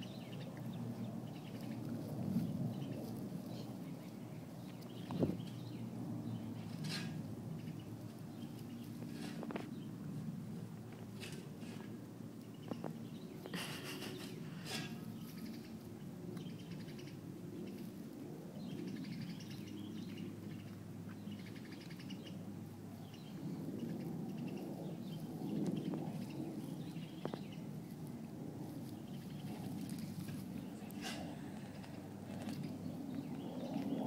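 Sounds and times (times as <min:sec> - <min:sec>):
birds chirping: 0:00.0 - 0:10.0, 0:11.1 - 0:17.9, 0:18.6 - 0:28.2, 0:28.8 - 0:34.0
animal tearing and chewing grass: 0:27.8 - 0:32.8.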